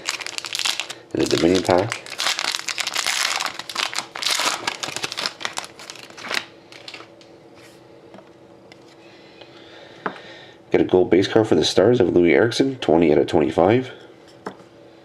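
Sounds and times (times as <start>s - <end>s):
card pack wrapper crinkling tearing: 0.0s - 7.3s.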